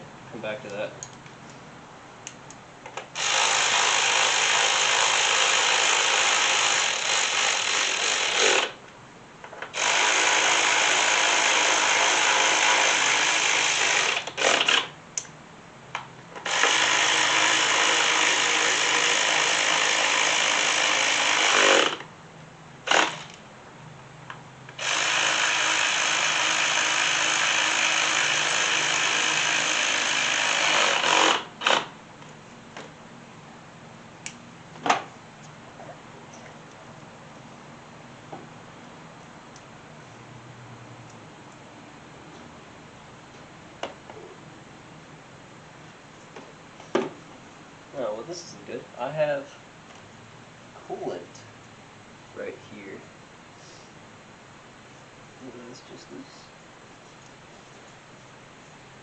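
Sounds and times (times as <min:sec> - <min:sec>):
cordless power tool running: 0:03.2 - 0:08.8, 0:09.7 - 0:14.9, 0:16.4 - 0:22.0, 0:22.8 - 0:23.4, 0:24.7 - 0:31.9.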